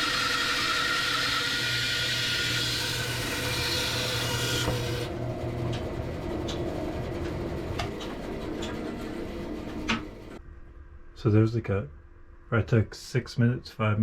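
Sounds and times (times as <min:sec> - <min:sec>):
bandsaw cutting wood: 0:00.0 - 0:05.1
bandsaw motor hum: 0:00.0 - 0:10.4.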